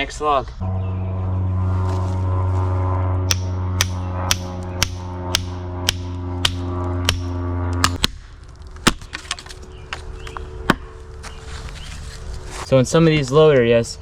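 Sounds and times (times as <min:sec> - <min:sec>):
low drone music with beat: 0:00.6 - 0:08.0.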